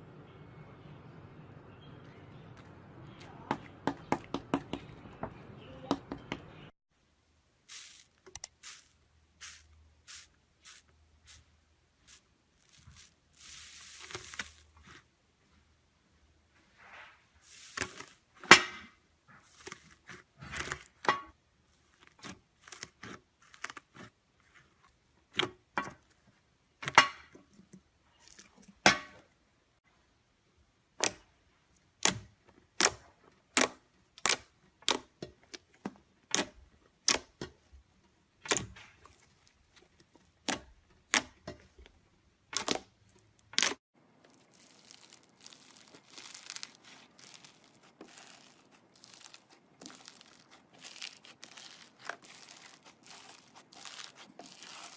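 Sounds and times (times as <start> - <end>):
slime crackling: 7.6 - 11.4, 12.0 - 15.0, 42.4 - 54.9.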